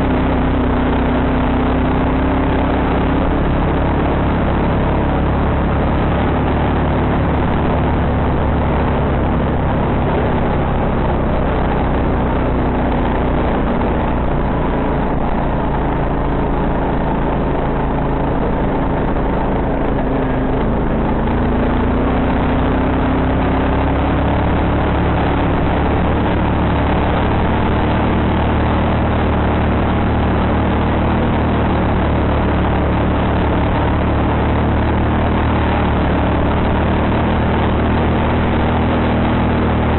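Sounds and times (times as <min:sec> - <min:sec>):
quad bike engine running: 0:00.0 - 0:39.9.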